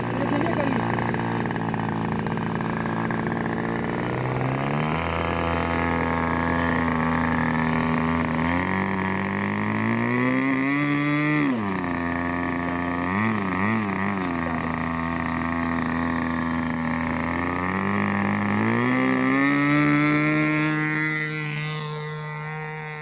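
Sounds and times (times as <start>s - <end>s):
motor running: 0.0s - 23.0s.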